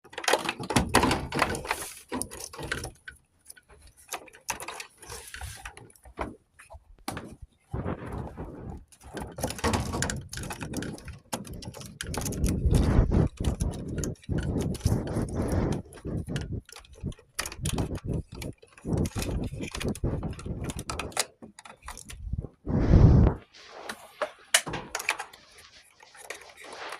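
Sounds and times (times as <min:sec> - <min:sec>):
knocking and clicking of tools: 0:00.0 - 0:22.4, 0:23.9 - 0:25.5.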